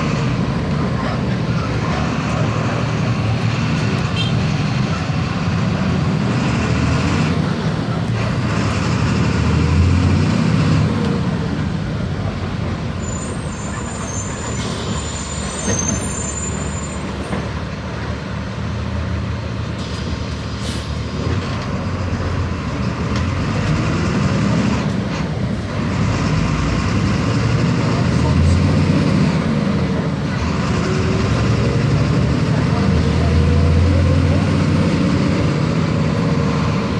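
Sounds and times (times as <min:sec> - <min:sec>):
bus diesel engine running: 0:00.0 - 0:36.9
short hiss of air: 0:19.8 - 0:21.0.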